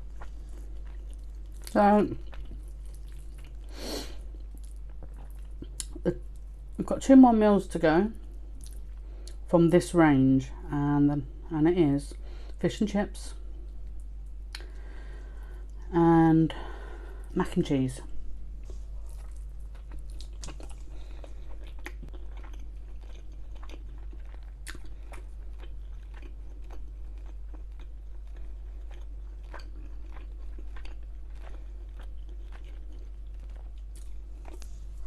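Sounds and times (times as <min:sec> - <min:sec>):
chewing and crunching food: 0:00.0 - 0:06.8, 0:08.1 - 0:09.5, 0:13.2 - 0:17.4, 0:18.0 - 0:35.0.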